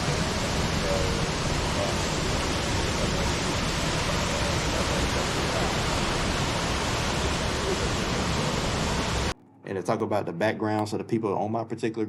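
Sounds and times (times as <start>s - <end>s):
waterfall roaring: 0.0s - 9.3s.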